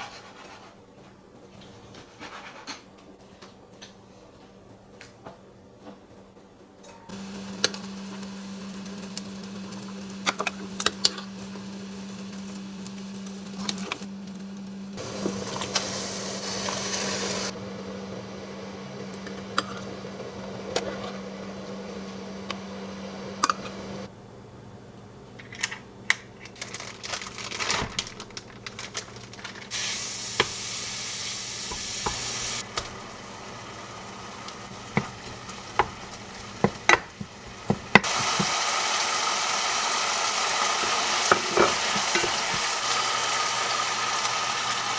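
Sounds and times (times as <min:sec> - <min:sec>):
food sizzling in a pan: 0:15.0 - 0:17.5, 0:29.7 - 0:44.9
steady hum: 0:28.7 - 0:38.1
utensils scraping cookware: 0:40.8 - 0:42.7.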